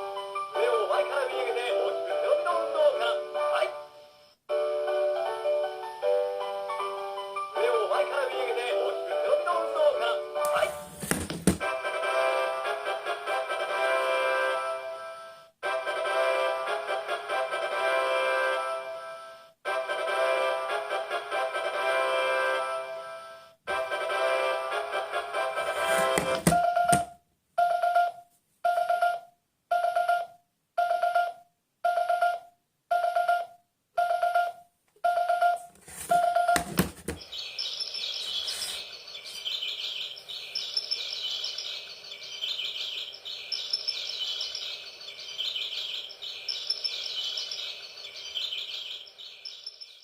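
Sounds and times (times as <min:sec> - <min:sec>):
alarm clock beeps: 0:26.3 - 0:50.0
electronic birdsong chirping: 0:36.2 - 0:50.0.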